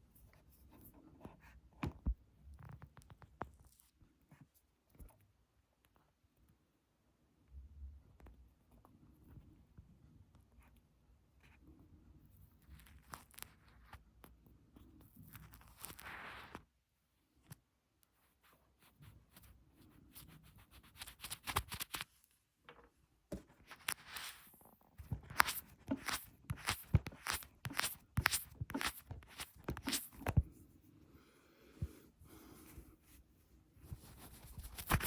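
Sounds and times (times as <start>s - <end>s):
fingertip rubbing and scratching: 18.4s - 22.1s, 23.5s - 30.5s, 33.8s - 35.0s.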